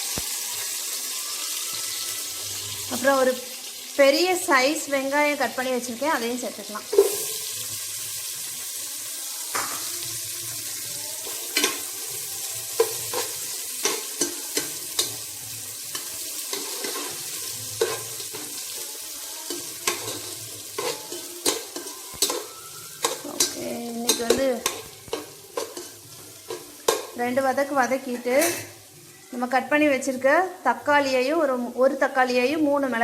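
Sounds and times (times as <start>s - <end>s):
onion sizzling in oil: 0.0s - 33.0s
spoon scraping and knocking pan: 6.9s - 7.5s, 12.7s - 28.8s.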